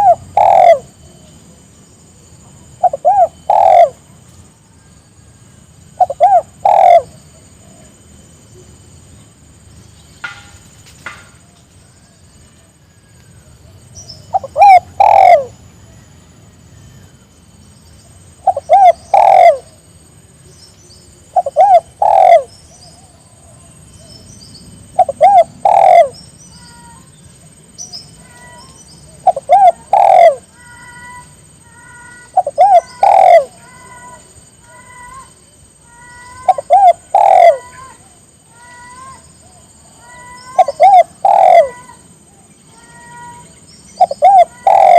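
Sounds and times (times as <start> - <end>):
dove cooing: 0.0 - 1.3, 2.7 - 4.2, 5.9 - 8.0, 12.7 - 16.0, 18.3 - 19.8, 21.3 - 24.2, 24.9 - 27.0, 28.0 - 44.9
faint bird chirps: 0.0 - 10.4, 11.5 - 44.9.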